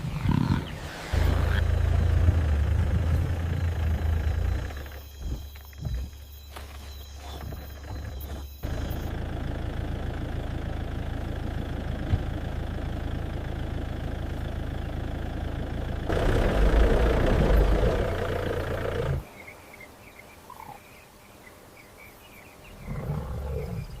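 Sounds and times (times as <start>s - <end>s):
faint night chirps: 0.0s - 15.9s
vehicle engine idling: 1.0s - 19.3s.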